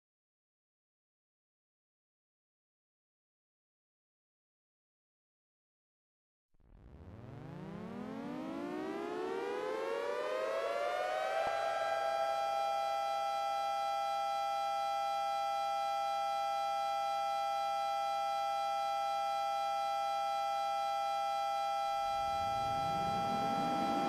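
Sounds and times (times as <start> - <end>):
lower rising siren tone: 6.7 - 14.5, 19.6 - 24.0
warning siren two-tone chord: 6.8 - 24.0.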